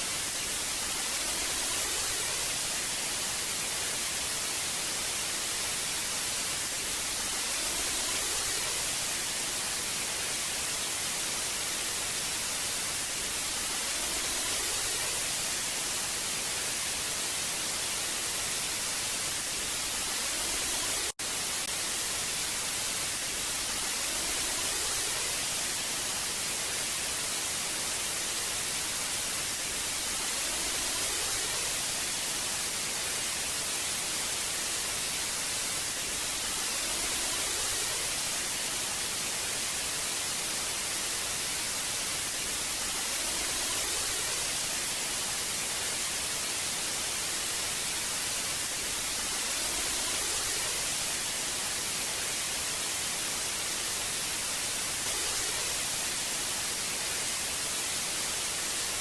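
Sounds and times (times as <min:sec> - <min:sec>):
tv static hiss: 0:00.0 - 0:59.0.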